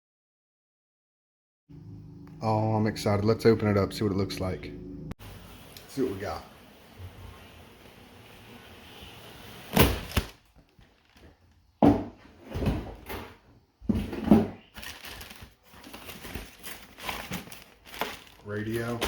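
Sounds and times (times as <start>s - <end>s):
cardboard box rustling and scraping: 14.0s - 19.0s.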